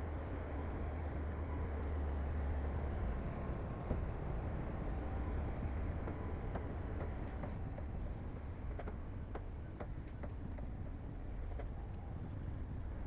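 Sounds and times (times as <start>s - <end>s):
light clicks and clanks: 6.0s - 7.9s, 8.6s - 12.0s.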